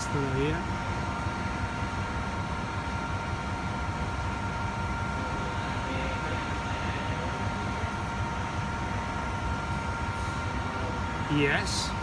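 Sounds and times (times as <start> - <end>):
grinding machine motor rumble: 0.0 - 12.0.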